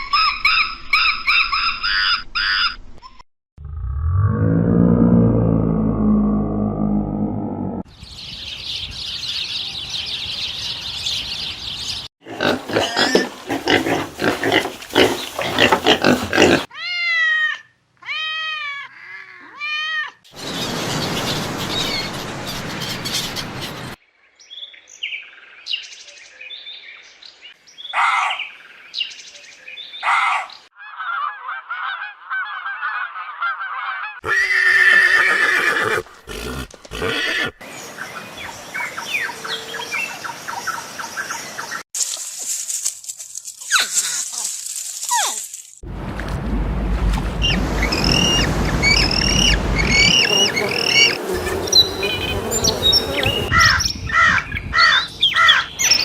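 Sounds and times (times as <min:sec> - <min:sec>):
rough repeated animal calls: 0:47.4 - 0:53.7
arched pitched cries: 0:47.4 - 0:53.8
bird chirps: 0:47.4 - 0:56.0.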